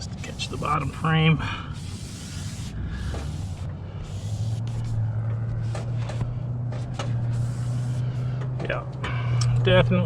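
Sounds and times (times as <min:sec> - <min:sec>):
engine humming: 0:00.0 - 0:10.0
light clicks and knocks: 0:08.4 - 0:08.8.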